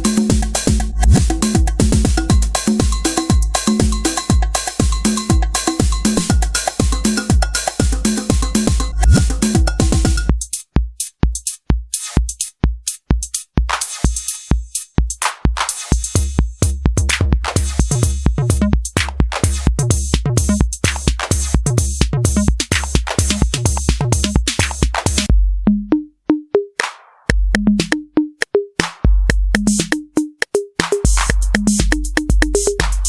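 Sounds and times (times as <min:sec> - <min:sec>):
crisp hi-hats: 0:00.0 - 0:25.3, 0:29.2 - 0:33.0
deep booming kick drums: 0:00.0 - 0:25.9, 0:27.3 - 0:27.9, 0:29.0 - 0:29.9, 0:31.1 - 0:33.0
snare or clap hits: 0:13.7 - 0:14.1, 0:15.2 - 0:16.0, 0:17.0 - 0:18.0, 0:19.0 - 0:19.7, 0:20.8 - 0:21.6, 0:22.6 - 0:25.3, 0:26.8 - 0:28.0, 0:28.8 - 0:30.0, 0:30.8 - 0:33.0.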